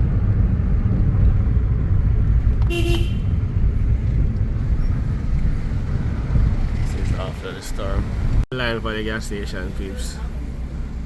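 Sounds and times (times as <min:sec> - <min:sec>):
car driving on road: 0:00.0 - 0:11.0
car horn toot: 0:02.7 - 0:03.5.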